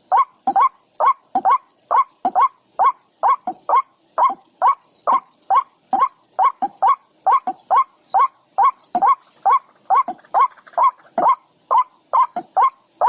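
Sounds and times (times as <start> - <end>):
faint high steady tone: 0.0 - 13.0.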